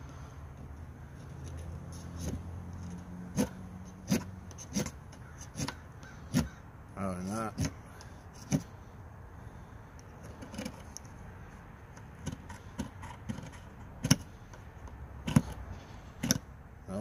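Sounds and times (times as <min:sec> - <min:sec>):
knife scraping ferrocerium rod: 0:01.6 - 0:06.6, 0:07.2 - 0:08.8, 0:12.0 - 0:16.5.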